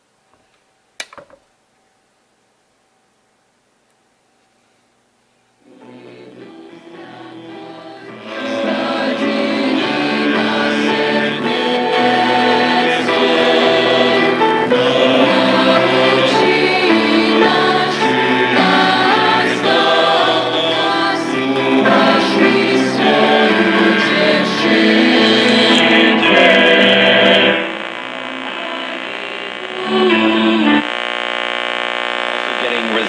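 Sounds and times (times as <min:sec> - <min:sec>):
choir singing gospel on radio: 0:05.6 - 0:33.0
radio crackles: 0:25.0 - 0:33.0.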